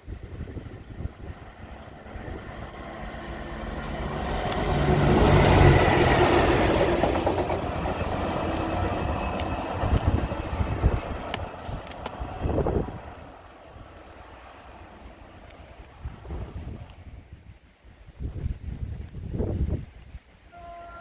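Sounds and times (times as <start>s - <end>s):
train passing: 0.0s - 17.2s.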